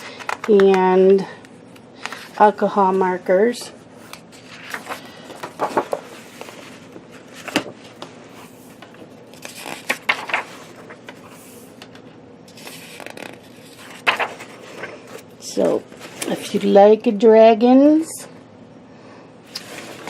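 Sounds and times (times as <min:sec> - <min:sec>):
paper pages rustling: 0:04.0 - 0:16.8, 0:19.5 - 0:20.0.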